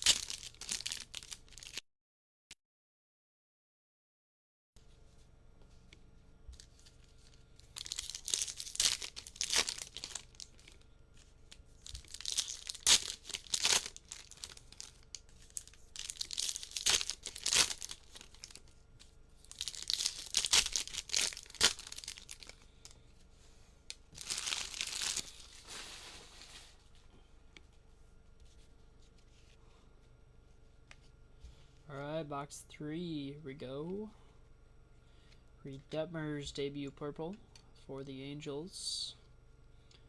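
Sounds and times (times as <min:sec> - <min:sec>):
card wrappers tearing and crinkling: 0:00.0 - 0:01.8, 0:06.6 - 0:23.0, 0:24.1 - 0:26.8.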